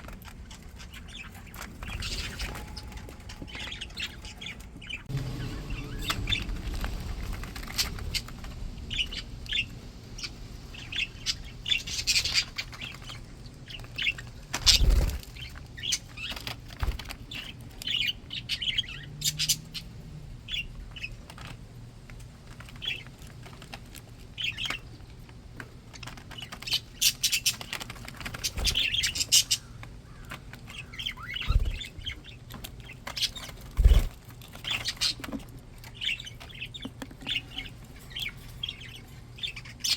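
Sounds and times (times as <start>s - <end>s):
wing flutters and knocks: 0.0s - 9.7s, 11.8s - 17.6s, 25.6s - 30.7s, 31.3s - 38.7s
budgerigars chirping: 0.5s - 16.5s, 17.3s - 21.2s, 26.3s - 39.9s.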